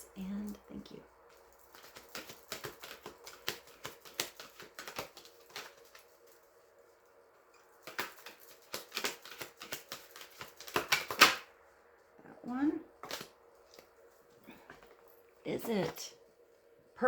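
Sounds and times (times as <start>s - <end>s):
cards being shuffled: 1.2s - 6.7s, 7.7s - 11.5s, 13.0s - 15.0s.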